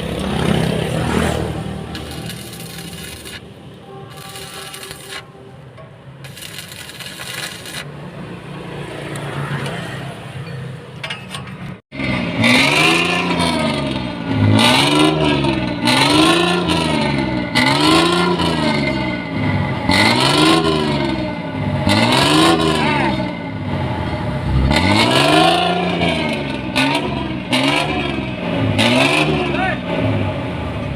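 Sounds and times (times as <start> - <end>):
bus diesel engine revving: 11.9 - 30.9.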